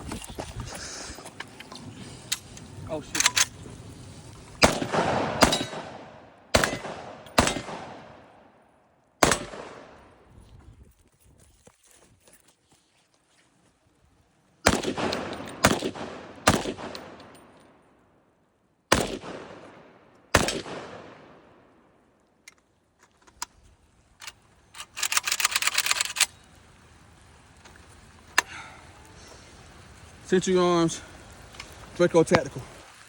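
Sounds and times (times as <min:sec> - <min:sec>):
pistol shots with echo: 0:04.6 - 0:08.5, 0:09.2 - 0:10.0, 0:14.6 - 0:17.3, 0:18.9 - 0:21.6.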